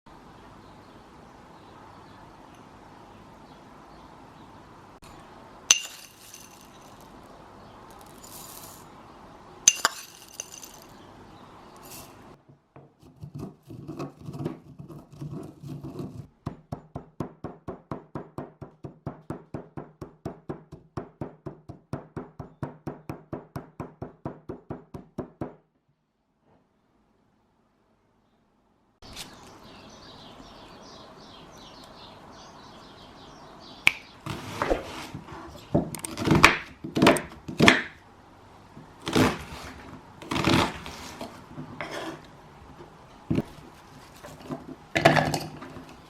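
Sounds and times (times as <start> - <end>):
sharp clinks: 5.0 - 7.3, 9.7 - 11.0.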